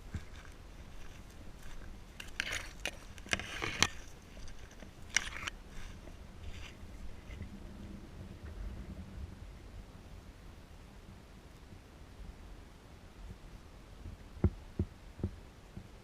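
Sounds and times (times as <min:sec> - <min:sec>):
footsteps on dirt trail: 0:00.0 - 0:07.4.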